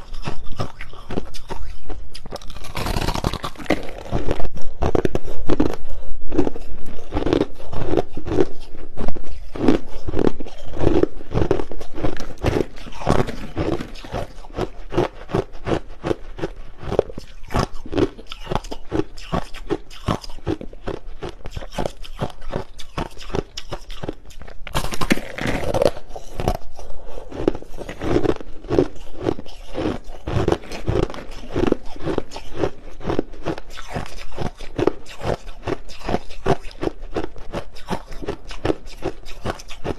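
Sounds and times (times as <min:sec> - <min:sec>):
crushed ice being chewed: 0:00.0 - 0:39.9.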